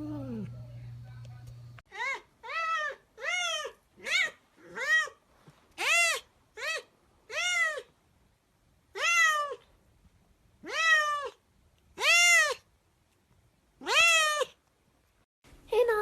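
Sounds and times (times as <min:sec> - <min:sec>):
cat meowing: 0:05.8 - 0:07.9, 0:08.9 - 0:09.7, 0:10.6 - 0:11.4, 0:12.0 - 0:12.7, 0:13.8 - 0:14.6.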